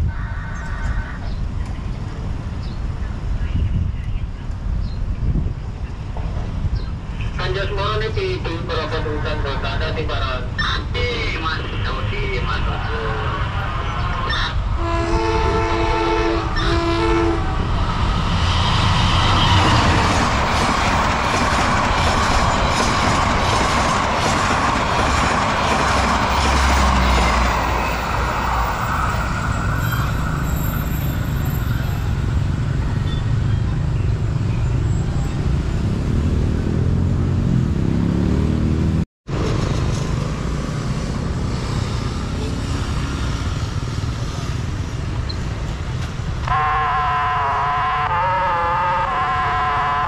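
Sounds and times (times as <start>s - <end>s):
train rumbling: 0.0s - 50.0s
car engines: 1.3s - 46.5s
motorcycle engines: 30.1s - 46.7s.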